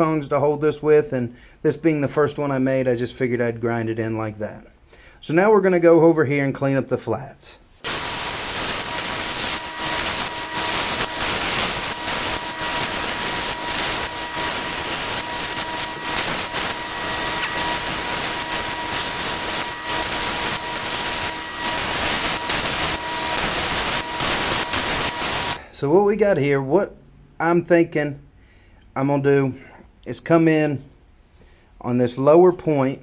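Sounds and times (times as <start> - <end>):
grinder grinding steel: 7.8 - 25.6
grinder motor whine: 7.8 - 25.6.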